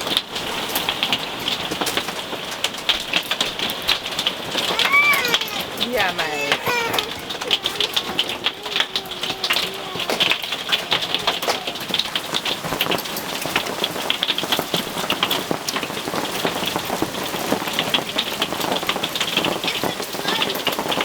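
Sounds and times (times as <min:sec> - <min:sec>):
hail rattling on a roof: 0:00.0 - 0:21.0.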